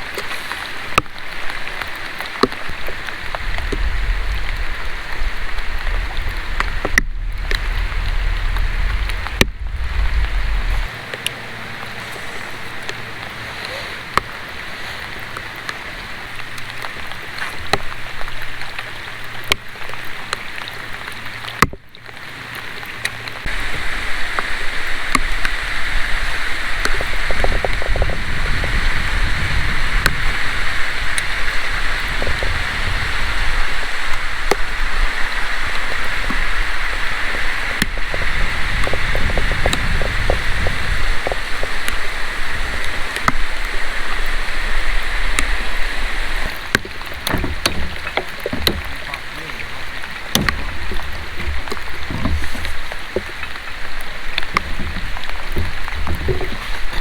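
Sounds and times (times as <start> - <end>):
water rushing: 0.0 - 57.0
wind noise: 2.6 - 13.5, 23.4 - 57.0
low rumble: 3.0 - 13.6.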